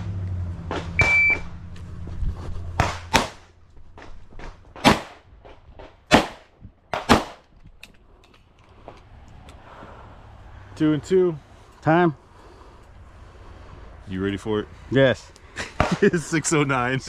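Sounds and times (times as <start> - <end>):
gunshots: 2.8 - 3.5, 4.8 - 5.2, 6.1 - 7.4.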